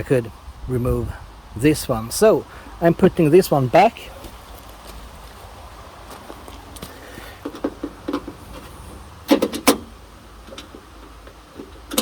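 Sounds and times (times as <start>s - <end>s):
car door latch clicks: 9.3s - 9.9s.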